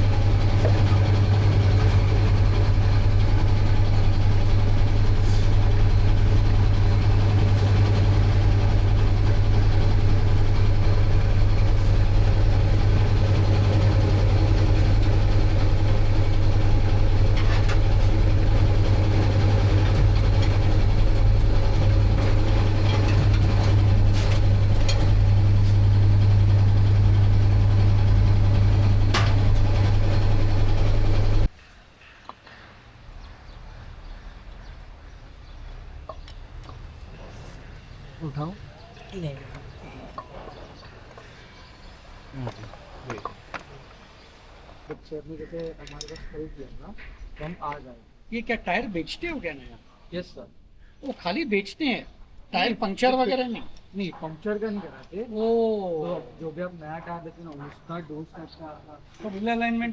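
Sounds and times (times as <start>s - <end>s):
engine idling: 0.0s - 31.5s.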